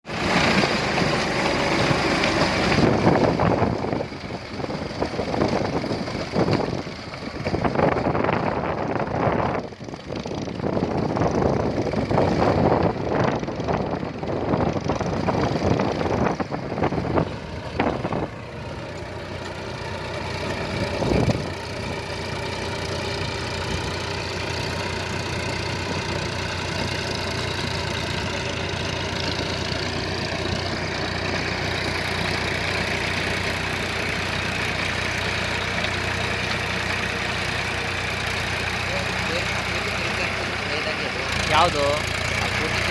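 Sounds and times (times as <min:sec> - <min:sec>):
tractor diesel engine running: 0:00.0 - 0:42.9
wind buffeting microphone: 0:02.8 - 0:18.5, 0:20.9 - 0:21.6.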